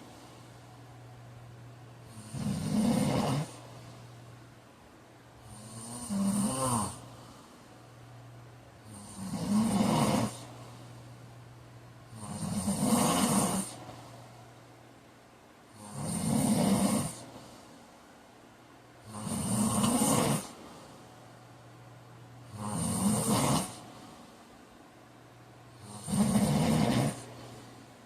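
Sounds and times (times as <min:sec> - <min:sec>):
faint steady hum: 0:00.0 - 0:28.0
man snoring: 0:02.0 - 0:03.7, 0:05.4 - 0:07.5, 0:08.8 - 0:10.7, 0:12.1 - 0:14.0, 0:15.7 - 0:17.4, 0:19.0 - 0:20.6, 0:22.4 - 0:23.9, 0:25.8 - 0:27.7.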